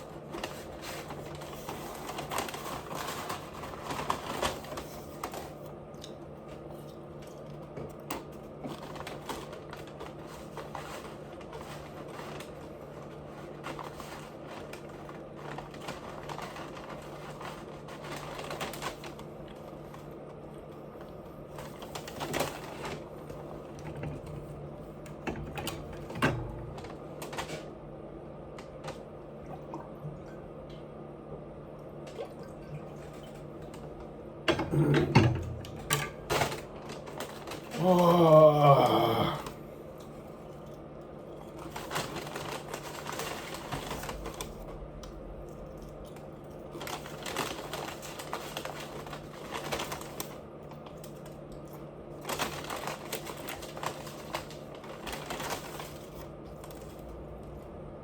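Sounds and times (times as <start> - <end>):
steady low hum: 17.0 - 49.2.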